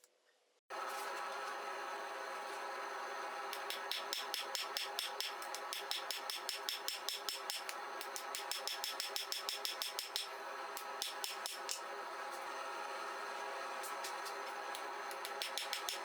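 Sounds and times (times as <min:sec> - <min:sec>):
steady hum: 0:00.7 - 0:16.0
hammer striking steel on anvil: 0:03.5 - 0:11.8, 0:15.2 - 0:16.0.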